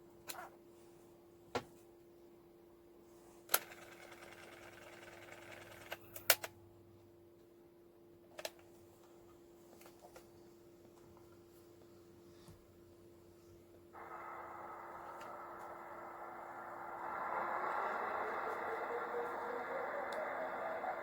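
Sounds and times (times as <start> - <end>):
tape-drive motor running: 3.5 - 6.0, 14.0 - 21.0.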